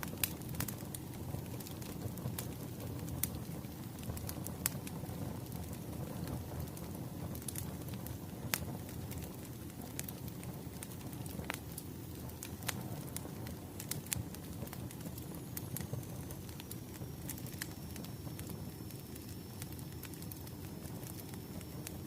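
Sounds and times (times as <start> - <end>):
low rumble of burning logs: 0.0 - 22.0
wood fire crackling and popping: 0.0 - 22.0.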